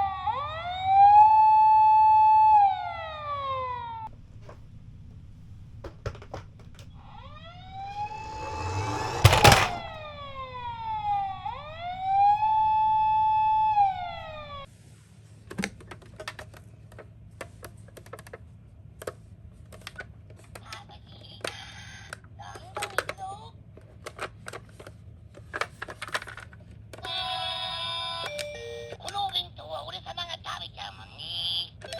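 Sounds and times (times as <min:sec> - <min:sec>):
sharp knock: 0:07.6 - 0:10.0.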